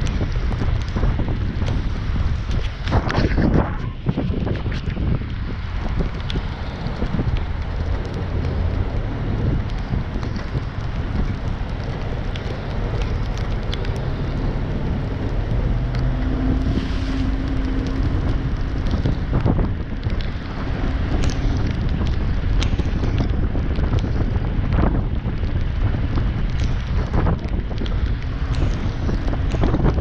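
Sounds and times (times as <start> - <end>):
heavy machinery engine rumble: 0.0 - 30.0
wind buffeting microphone: 0.0 - 30.0.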